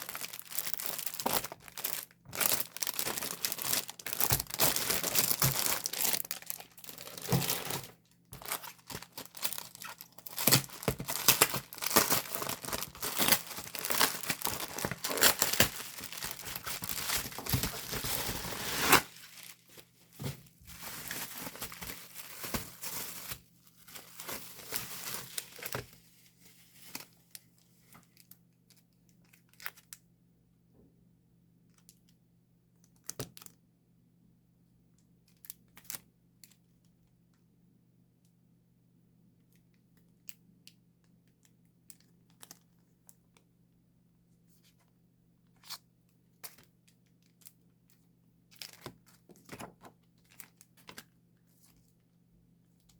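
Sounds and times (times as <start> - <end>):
plastic sleeves crinkling: 0.0 - 29.9.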